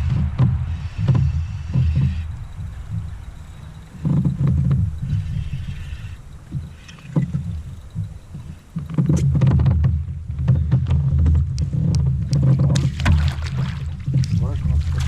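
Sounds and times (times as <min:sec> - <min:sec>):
low rumble: 0:00.0 - 0:08.6.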